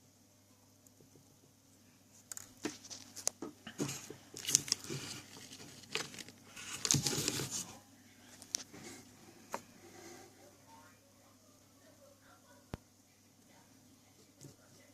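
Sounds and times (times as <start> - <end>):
small objects handled by hand: 2.1 - 10.3.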